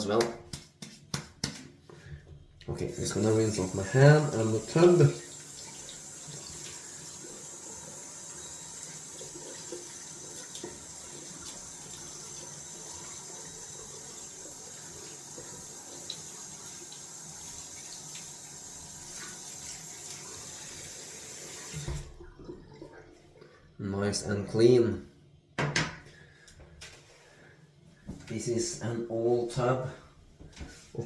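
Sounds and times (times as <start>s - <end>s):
tap running into a sink: 21.5s - 22.2s.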